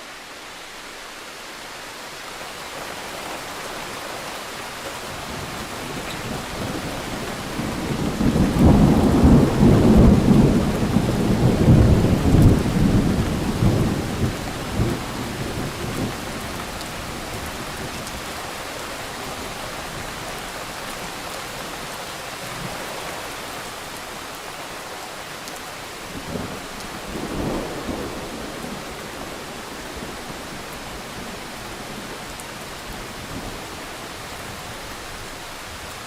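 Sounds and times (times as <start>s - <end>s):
heavy rain: 0.0s - 36.0s
thunder rolling: 5.3s - 16.5s.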